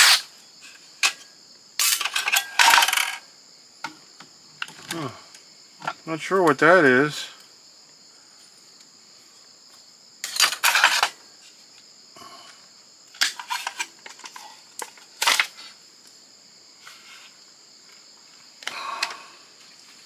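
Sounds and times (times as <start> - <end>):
plastic and metal parts clattering: 1.8 - 3.2, 10.2 - 11.2, 13.2 - 15.7.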